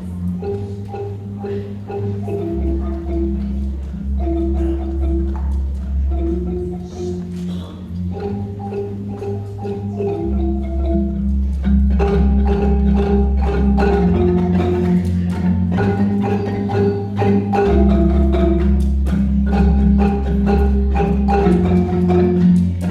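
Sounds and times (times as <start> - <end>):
deep bass marimba notes: 0.0 - 22.9
marimba mallet strikes: 0.0 - 22.9.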